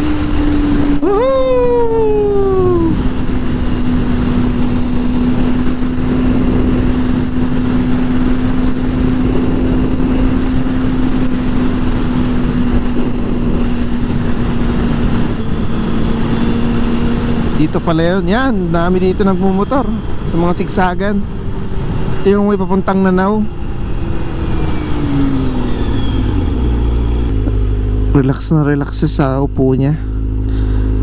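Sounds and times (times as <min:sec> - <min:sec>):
higher engine note falling: 0:00.0 - 0:31.0
motorcycle engine running: 0:00.0 - 0:31.0
wind and road noise: 0:00.0 - 0:31.0.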